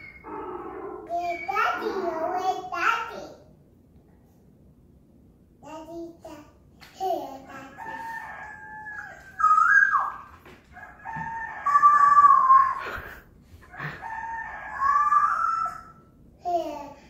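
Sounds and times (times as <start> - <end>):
rooster crowing: 7.6 - 12.8, 13.6 - 16.0.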